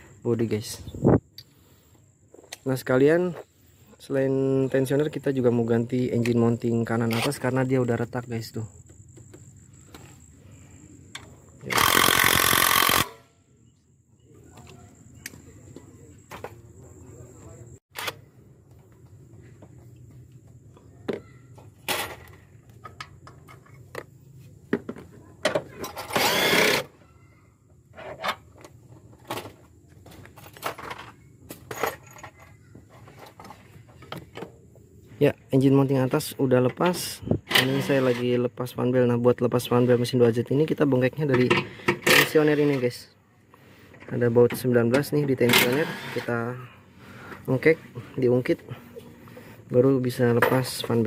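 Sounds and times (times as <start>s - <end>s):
impact wrench burst: 11.7s - 13.3s, 26.1s - 26.9s
tools and bolts clinking on metal: 21.2s - 24.1s, 27.9s - 34.6s.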